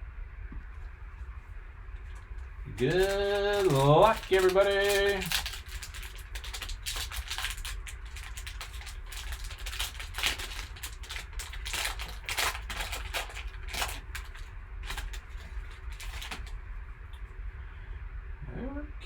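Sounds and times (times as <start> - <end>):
low steady hum: 0.0 - 19.0
packaging crinkling and rustling: 2.0 - 16.8.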